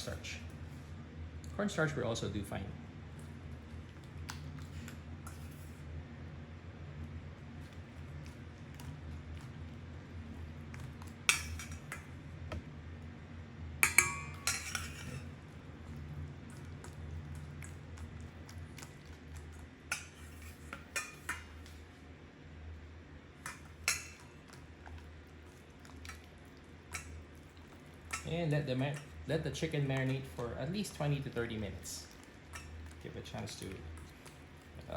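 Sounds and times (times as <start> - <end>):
low steady hum: 0.0 - 34.9
utensil clinking against mixing bowl: 10.8 - 12.1, 13.8 - 15.4, 18.8 - 21.6, 23.4 - 24.7, 26.9 - 34.9.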